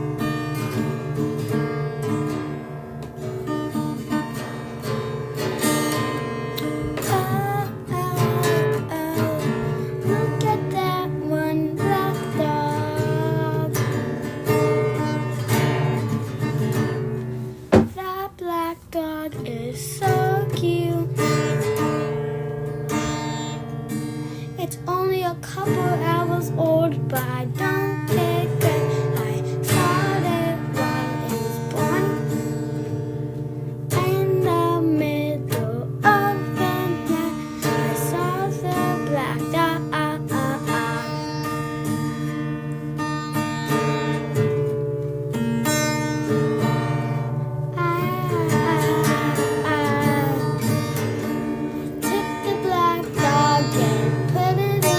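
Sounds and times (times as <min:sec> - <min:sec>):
plucked string instruments: 0:00.0 - 0:18.1, 0:19.4 - 0:54.9
acoustic guitar: 0:00.0 - 0:54.9
person singing: 0:06.5 - 0:16.0, 0:17.8 - 0:22.1, 0:22.9 - 0:32.9, 0:33.9 - 0:41.7, 0:47.7 - 0:54.9.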